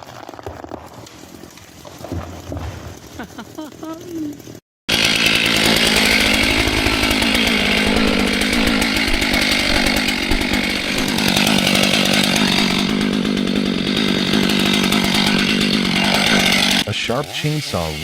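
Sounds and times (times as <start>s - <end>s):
chainsaw running at high revs: 4.9s - 18.0s.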